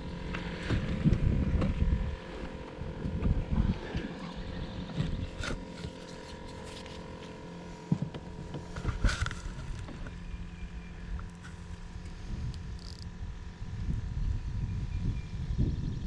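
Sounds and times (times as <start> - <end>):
boat motor humming: 0.0 - 16.0
knocks and thumps on boat: 0.2 - 6.9, 7.8 - 10.2.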